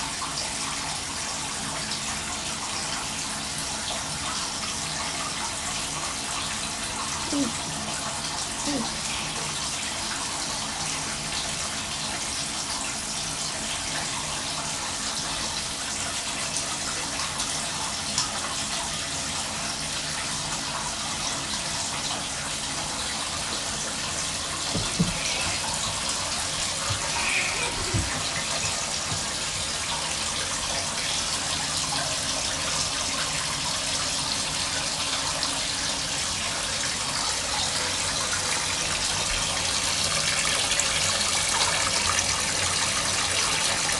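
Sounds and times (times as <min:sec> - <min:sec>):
tap running into a bathtub: 0:23.1 - 0:32.9.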